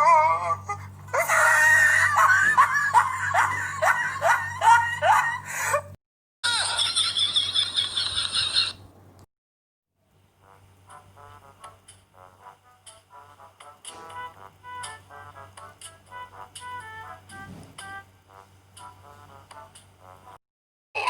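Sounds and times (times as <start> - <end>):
comedy voice cries falling in pitch: 0.0 - 5.8
steady low hum: 0.0 - 6.0, 10.1 - 20.4.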